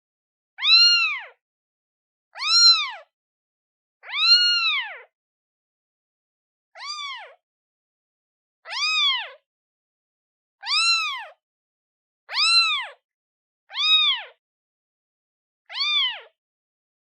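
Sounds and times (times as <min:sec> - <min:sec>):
newborn kitten meowing: 0:00.6 - 0:01.4, 0:02.3 - 0:03.2, 0:04.0 - 0:05.1, 0:06.8 - 0:07.4, 0:08.6 - 0:09.5, 0:10.6 - 0:11.4, 0:12.3 - 0:13.0, 0:13.7 - 0:14.4, 0:15.7 - 0:16.4.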